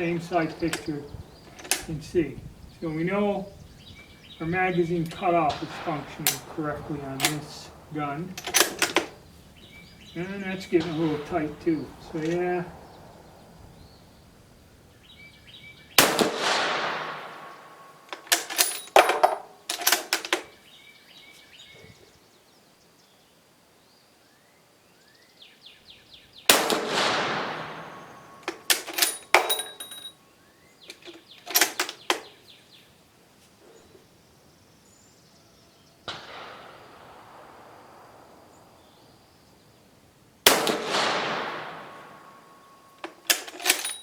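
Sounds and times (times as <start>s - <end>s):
rifle shots echoing: 0.0s - 20.5s, 26.5s - 30.1s, 36.1s - 39.6s, 40.4s - 44.0s.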